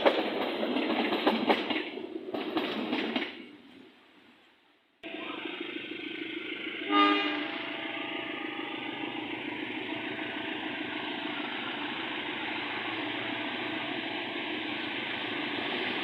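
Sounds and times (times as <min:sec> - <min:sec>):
engine drone: 0:05.0 - 0:16.0
train horn blast: 0:06.8 - 0:11.5.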